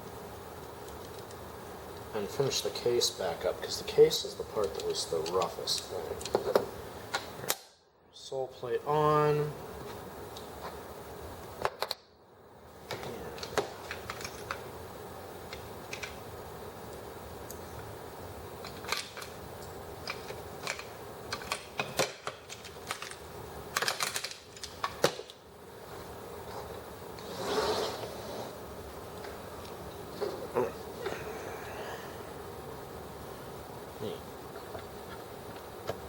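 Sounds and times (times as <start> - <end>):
scraping rustle: 25.8 - 28.6.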